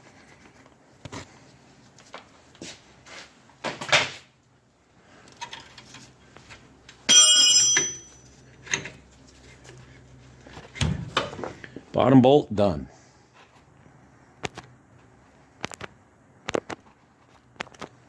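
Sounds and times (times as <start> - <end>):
metal piece ringing: 7.1 - 8.4
metal parts clinking: 7.1 - 9.0.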